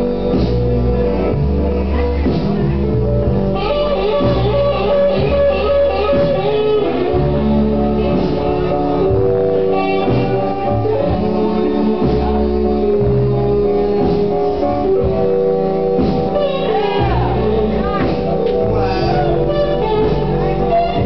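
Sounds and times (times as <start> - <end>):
bass: 0.0 - 21.0
guitar: 0.0 - 21.0
person singing blues: 18.6 - 20.1.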